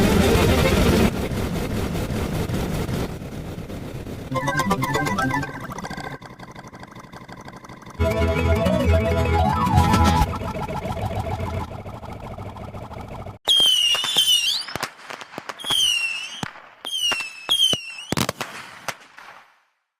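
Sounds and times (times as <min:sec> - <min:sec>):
fireworks whistles: 0:13.4 - 0:19.4
fireworks crackling: 0:13.4 - 0:19.6
fireworks cracks and bangs: 0:13.5 - 0:19.6.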